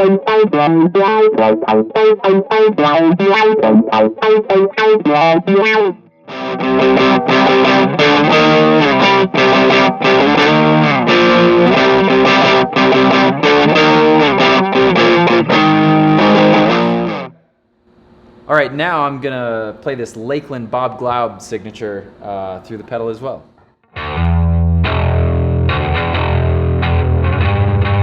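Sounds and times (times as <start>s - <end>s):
distorted electric guitar: 0.0s - 17.4s, 23.9s - 28.0s.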